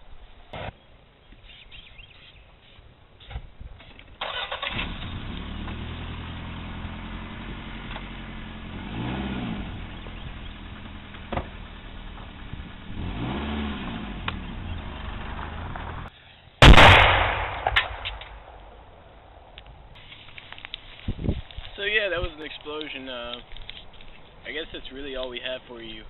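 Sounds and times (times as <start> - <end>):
engine idling and revving: 4.2 - 16.1.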